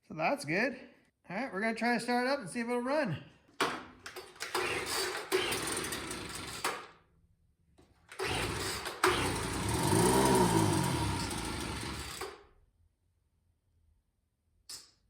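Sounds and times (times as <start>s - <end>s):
starter cord pulls: 3.6s - 6.9s, 7.8s - 12.5s
leaf blower engine running: 4.6s - 6.6s, 8.2s - 12.4s.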